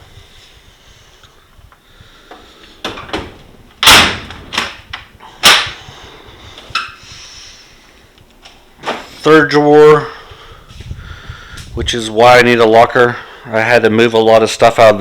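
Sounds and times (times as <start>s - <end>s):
metal drawers clunking and rattling: 2.8s - 4.9s.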